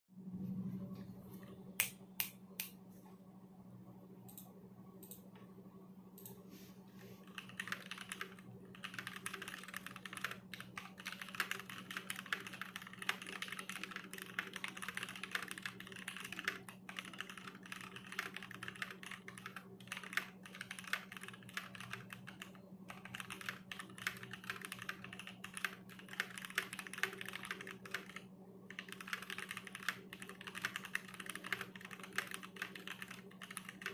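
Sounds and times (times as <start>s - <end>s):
mechanical keyboard typing: 7.2s - 33.9s.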